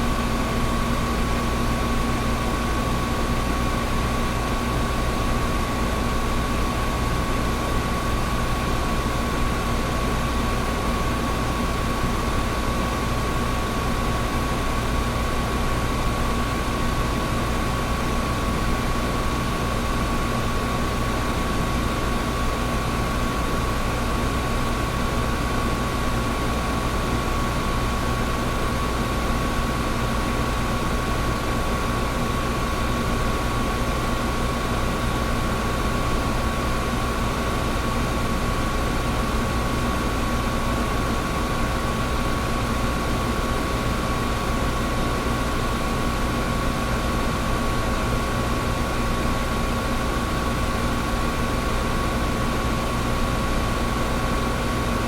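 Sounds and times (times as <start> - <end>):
air conditioner running: 0.0 - 55.0.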